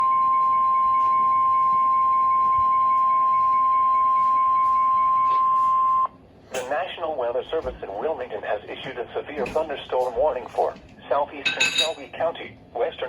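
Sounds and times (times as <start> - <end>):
high-pitched warning alarm beep: 0.0 - 6.1.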